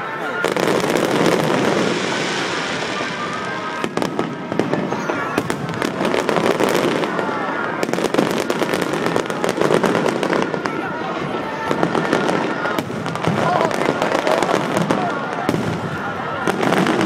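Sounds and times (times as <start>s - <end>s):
fireworks bangs and crackles: 0.0s - 17.0s
voices of onlookers: 0.0s - 17.0s.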